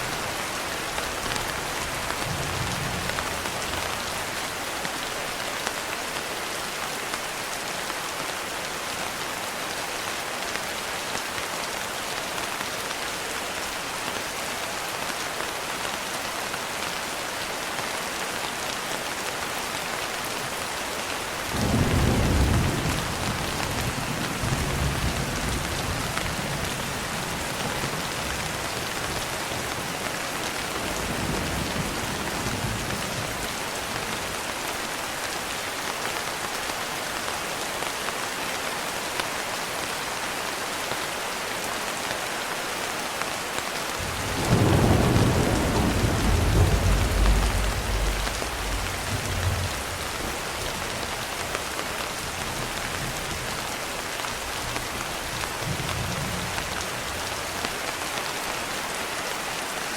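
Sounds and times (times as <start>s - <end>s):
steady rain: 0.0s - 59.9s
thunder clap rumbling: 21.6s - 26.6s, 44.0s - 51.1s.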